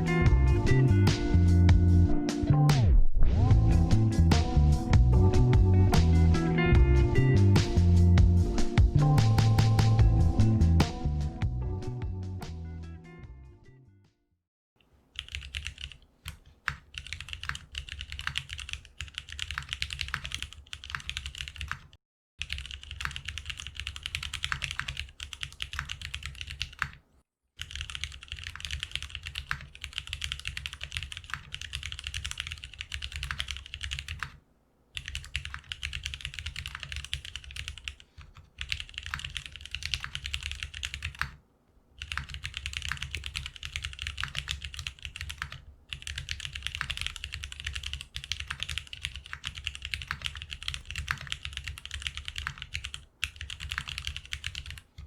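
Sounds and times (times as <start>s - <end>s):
fast typing on mechanical keyboard: 15.2s - 27.0s, 27.6s - 34.4s, 35.0s - 41.4s, 42.0s - 55.0s.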